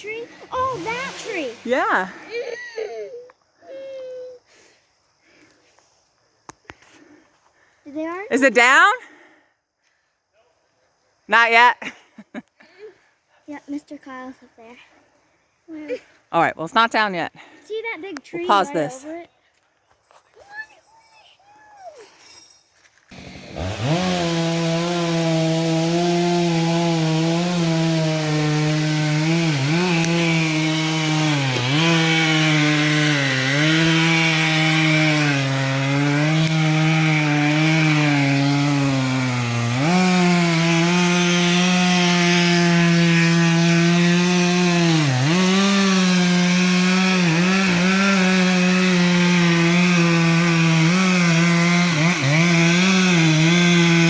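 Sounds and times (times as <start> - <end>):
chainsaw cutting wood: 0.0 - 2.9, 23.1 - 54.0.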